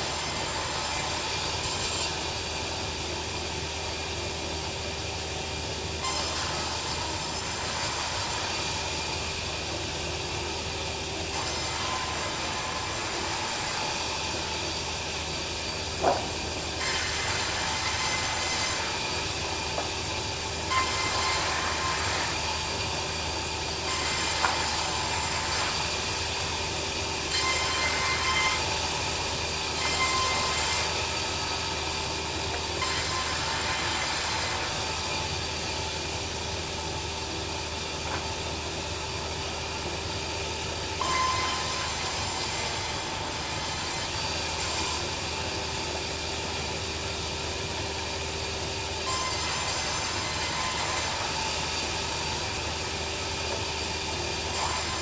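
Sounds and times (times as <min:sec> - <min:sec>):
saw blade cutting timber: 0:06.0 - 0:09.1, 0:11.3 - 0:14.4, 0:15.7 - 0:35.6, 0:41.0 - 0:46.1, 0:49.0 - 0:55.0
bandsaw mill humming: 0:06.0 - 0:55.0.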